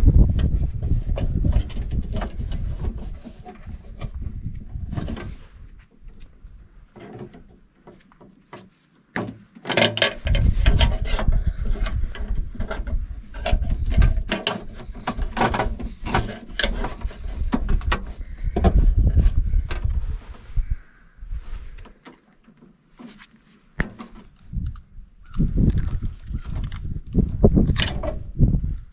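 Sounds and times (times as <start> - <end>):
hand tools clicking and ratcheting on metal: 9.6 - 11.0.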